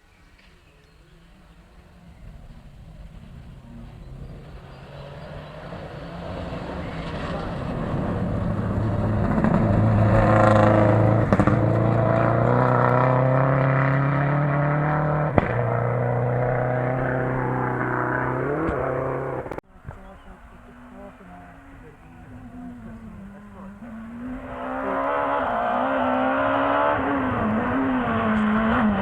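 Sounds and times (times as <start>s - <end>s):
rally car engine revving: 1.6s - 29.0s.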